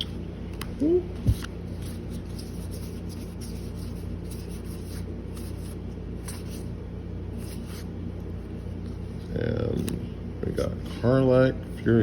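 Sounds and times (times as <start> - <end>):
steady low hum: 0.0 - 12.0
cards sliding and flicking: 0.6 - 6.7, 7.4 - 7.9.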